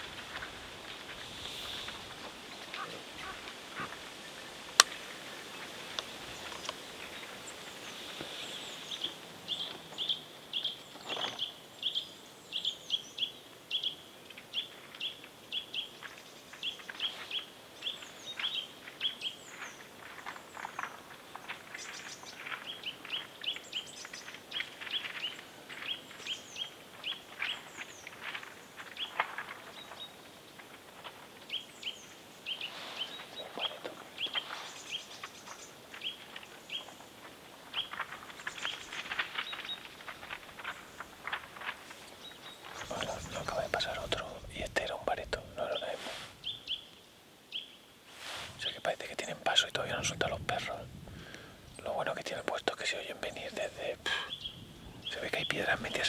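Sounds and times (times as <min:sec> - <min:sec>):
faint crack or rustle: 0:00.0 - 0:10.1, 0:10.7 - 0:11.5, 0:14.3 - 0:47.0
songbirds chirping: 0:00.0 - 0:56.0.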